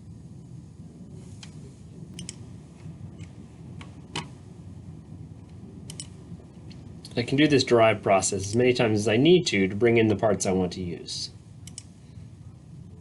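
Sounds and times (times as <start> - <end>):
low steady hum: 0.0 - 13.0
computer mouse clicks: 2.2 - 2.4, 5.9 - 6.1, 11.6 - 11.9.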